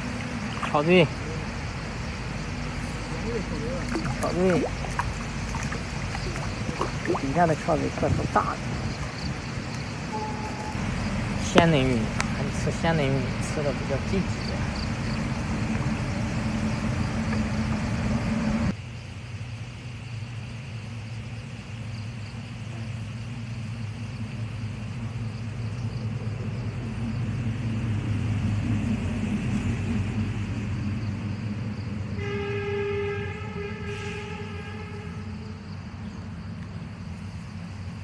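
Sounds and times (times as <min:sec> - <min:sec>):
low rumble: 0:00.0 - 0:18.7, 0:22.6 - 0:32.3
wind buffeting microphone: 0:00.0 - 0:18.7, 0:23.7 - 0:32.2
horn sounding: 0:10.0 - 0:12.3, 0:32.1 - 0:35.7.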